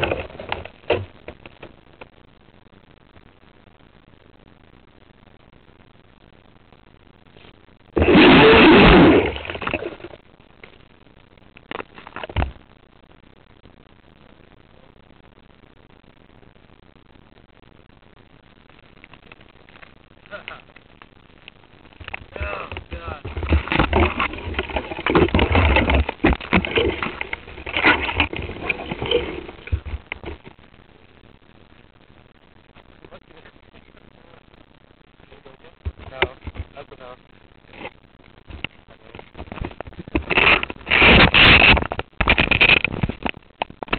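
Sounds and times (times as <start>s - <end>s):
water rushing along hull: 23.4s - 30.0s.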